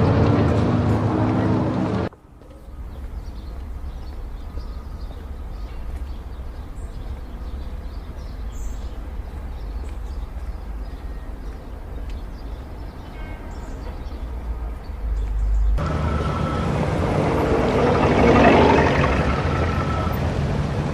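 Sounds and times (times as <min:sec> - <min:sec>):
background noise: 0:00.0 - 0:20.9
steady low rumble: 0:15.4 - 0:20.9.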